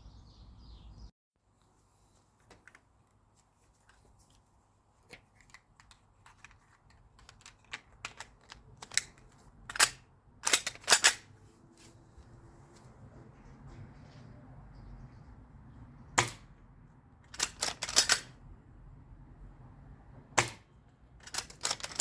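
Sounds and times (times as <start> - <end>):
rifle mechanism clicks and clacks: 5.4 - 11.3, 17.3 - 18.4, 21.2 - 22.0.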